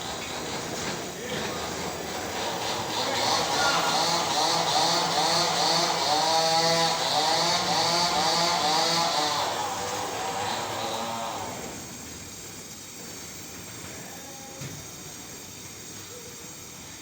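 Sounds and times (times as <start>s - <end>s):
small power tool running: 0.0s - 13.9s.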